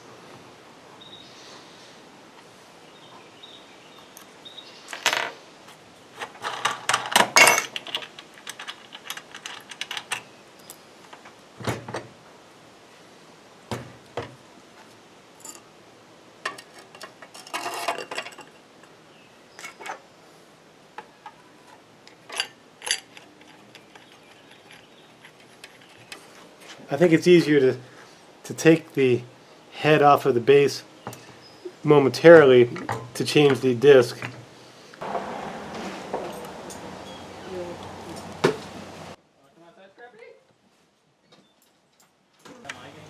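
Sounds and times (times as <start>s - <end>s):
metal parts clinking: 6.4s - 10.8s, 16.5s - 18.6s, 22.1s - 26.0s.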